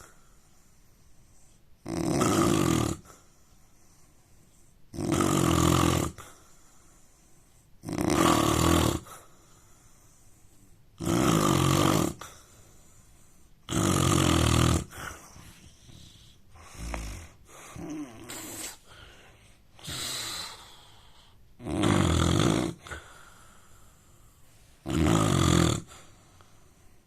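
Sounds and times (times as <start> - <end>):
soft breaths and snuffles: 0.0 - 27.0
man snoring: 1.8 - 3.3, 4.9 - 6.4, 7.8 - 9.3, 11.0 - 12.4, 13.6 - 18.9, 19.8 - 23.3, 24.8 - 26.5.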